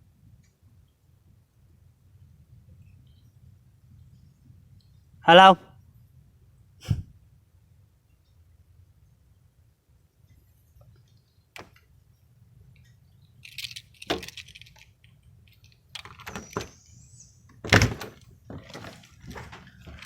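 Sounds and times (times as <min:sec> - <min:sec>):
clicks and knocks of handling: 0:12.8 - 0:16.8.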